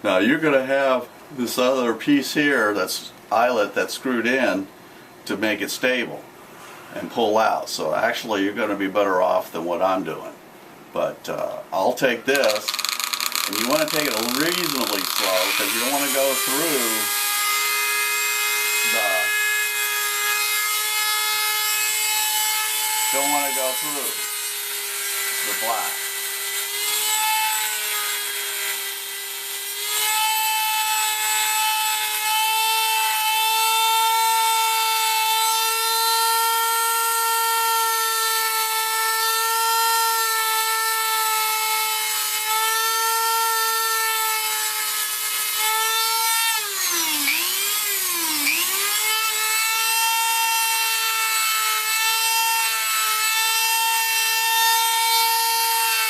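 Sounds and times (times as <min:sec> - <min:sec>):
rotary tool sanding metal: 0:12.3 - 0:56.0.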